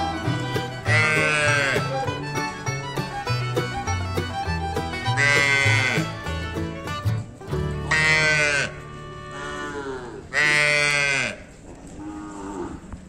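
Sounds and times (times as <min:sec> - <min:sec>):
calf bawling: 0:00.8 - 0:02.0, 0:05.0 - 0:06.2, 0:07.9 - 0:12.9.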